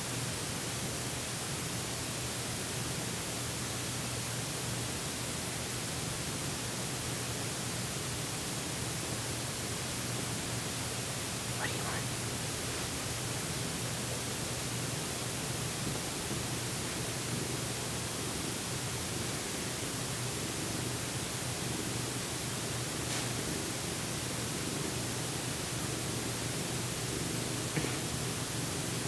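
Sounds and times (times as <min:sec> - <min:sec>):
steady hiss: 0:10.0 - 0:14.5, 0:20.6 - 0:29.0
faint low hum: 0:11.4 - 0:13.5.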